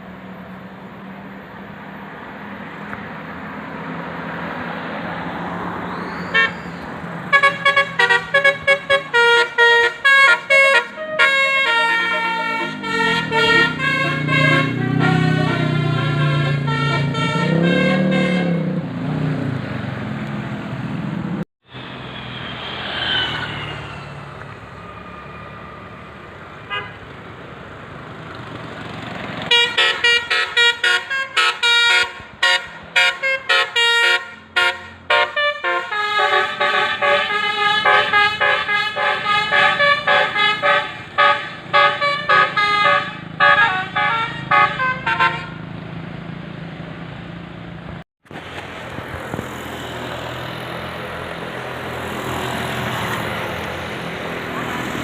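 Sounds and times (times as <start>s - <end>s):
bus musical horns: 6.2s - 18.8s, 26.6s - 27.2s, 29.4s - 45.7s.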